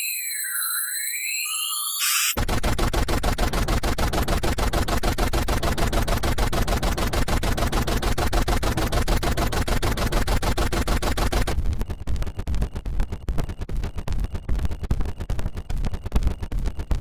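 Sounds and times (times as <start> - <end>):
gliding synthesizer tones: 0.0 - 4.4
harsh pulsing electronic static: 2.0 - 17.0.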